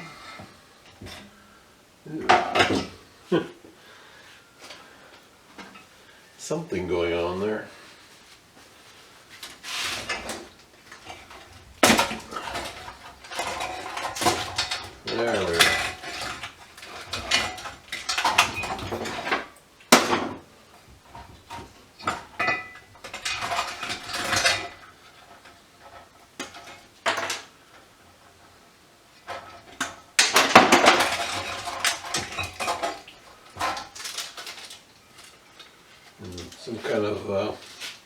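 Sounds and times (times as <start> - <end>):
metal tools clinking and clattering: 2.3 - 3.0, 9.4 - 19.5, 21.1 - 27.5, 29.2 - 35.7.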